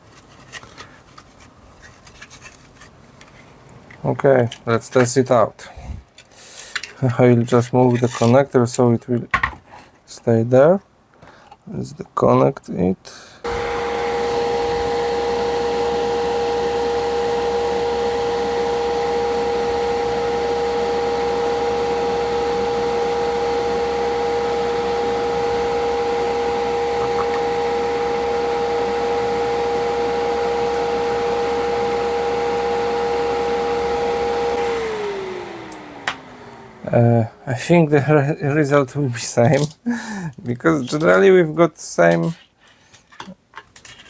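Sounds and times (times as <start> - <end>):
fan running with whine: 13.4 - 37.6.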